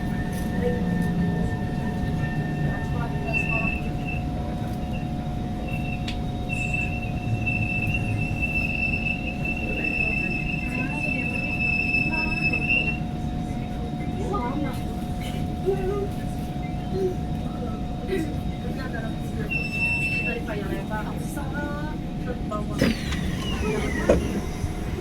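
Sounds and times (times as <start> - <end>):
train running rumble: 20.3 - 25.0
train brakes screeching: 22.8 - 25.0.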